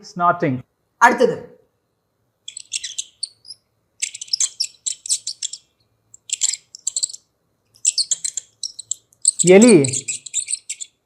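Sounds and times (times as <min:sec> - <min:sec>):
rodent squeaking: 0:02.4 - 0:11.0.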